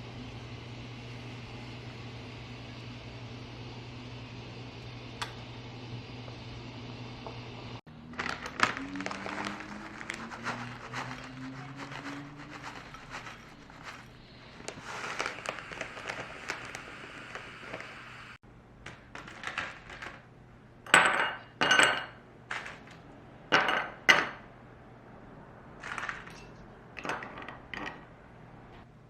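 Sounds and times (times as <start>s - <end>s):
dishes and cutlery clattering: 20.9s - 22.8s.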